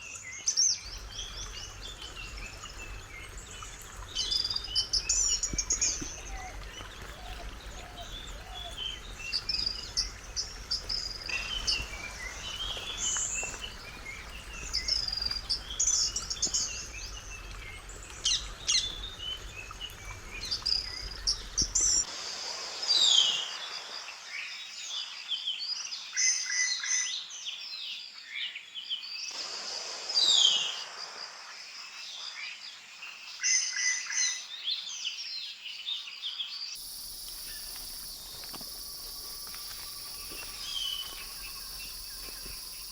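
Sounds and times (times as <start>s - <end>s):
forest birds singing: 0.0s - 22.1s, 31.9s - 42.9s
insect trill: 0.9s - 24.4s, 36.8s - 42.9s
falling whistled bird calls: 36.8s - 42.9s.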